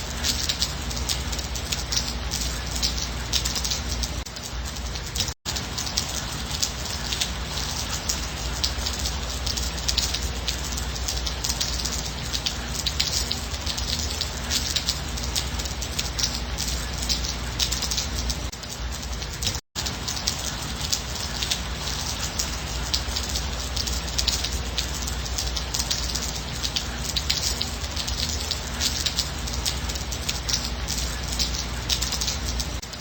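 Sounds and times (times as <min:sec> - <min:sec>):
steady rain falling: 0:00.0 - 0:33.0.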